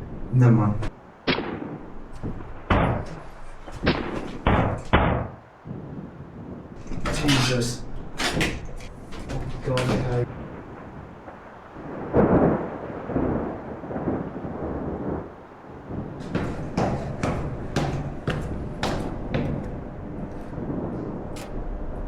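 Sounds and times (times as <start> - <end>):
thunder-like rumble: 0.0 - 22.0
sharp irregular cracks: 0.9 - 5.6, 6.8 - 11.5, 16.0 - 22.0.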